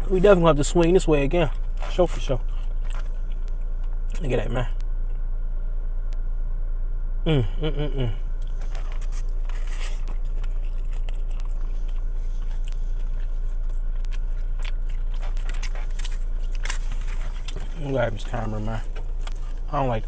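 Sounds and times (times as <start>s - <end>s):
chewing and crunching: 0.0s - 5.3s, 8.3s - 20.0s
steady low hum: 0.0s - 20.0s
person humming: 7.3s - 8.3s.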